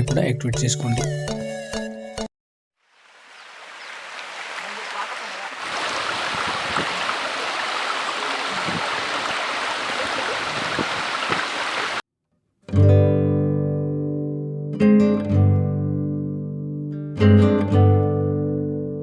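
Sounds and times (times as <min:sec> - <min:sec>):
waterfall rushing: 0:02.9 - 0:12.0
acoustic guitar music: 0:12.6 - 0:19.0.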